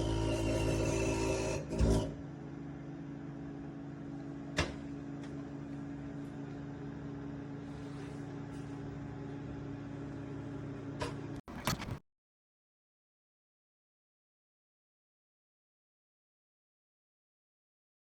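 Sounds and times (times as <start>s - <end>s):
microwave humming: 0.0s - 12.0s.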